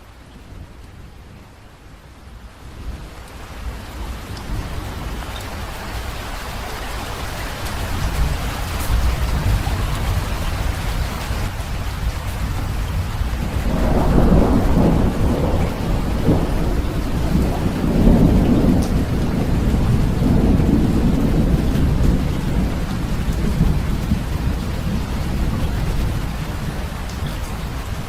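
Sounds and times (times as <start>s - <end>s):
steady rain: 0.0s - 28.0s
thunder rolling: 7.8s - 28.0s.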